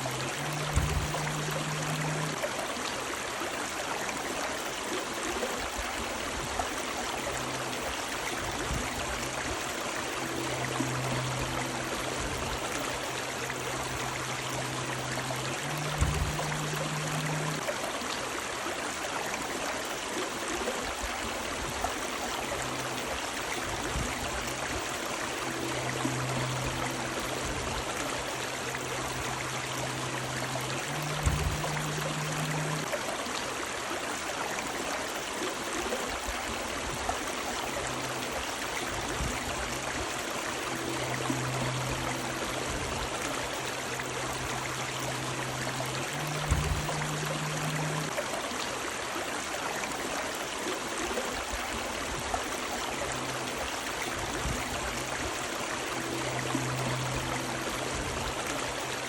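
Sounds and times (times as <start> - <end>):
faint low hum: 0.0 - 2.5, 5.4 - 17.7, 22.0 - 33.0, 36.6 - 48.2
river water rushing over rocks: 0.0 - 59.0
low thump: 0.6 - 1.4, 16.0 - 16.6, 31.2 - 31.9.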